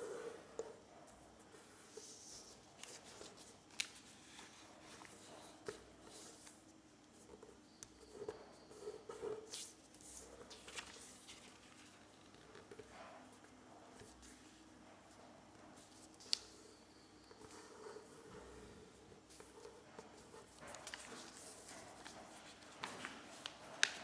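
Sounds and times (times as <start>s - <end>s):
paper rustling and crinkling: 2.0s - 6.6s, 9.4s - 12.9s, 19.3s - 24.0s.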